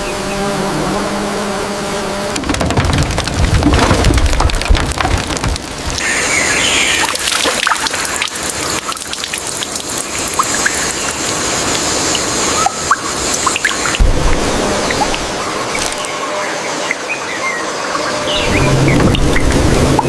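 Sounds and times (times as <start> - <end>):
heavy rain patter: 2.3 - 16.1, 18.4 - 20.0.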